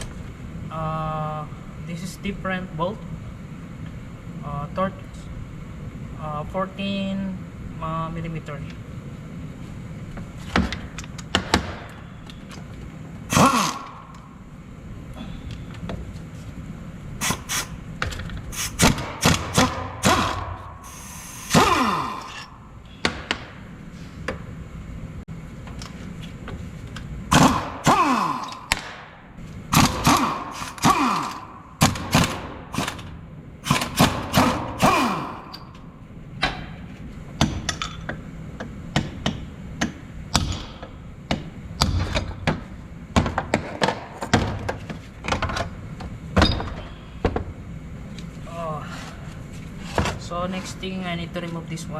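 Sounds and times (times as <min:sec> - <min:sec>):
metal tools knocking and clanking: 0:37.4 - 0:38.2.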